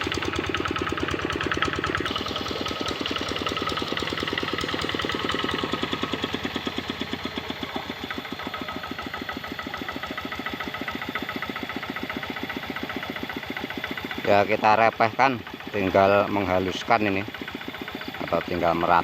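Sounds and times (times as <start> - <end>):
diesel engine knocking beat: 0.0 - 19.0.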